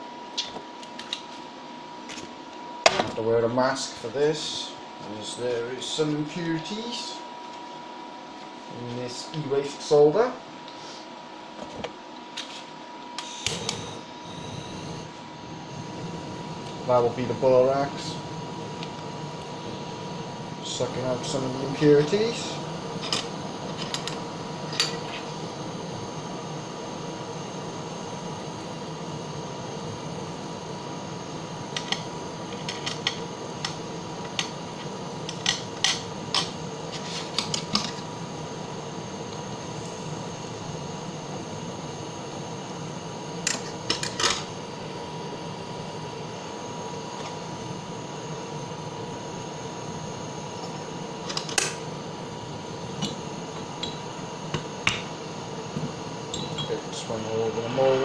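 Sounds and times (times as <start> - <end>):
blowtorch flame roaring: 13.2 - 58.0.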